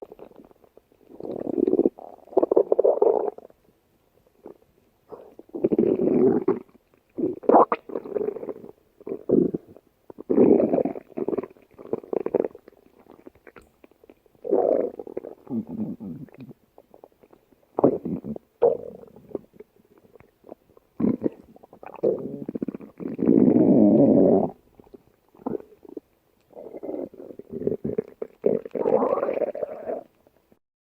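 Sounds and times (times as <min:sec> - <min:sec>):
cartoon stomach growling: 0:17.8 - 0:19.5, 0:21.0 - 0:30.1.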